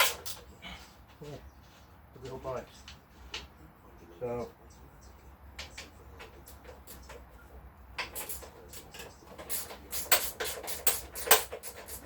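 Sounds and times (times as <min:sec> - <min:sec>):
hand tools clicking and tapping: 0:08.0 - 0:12.0.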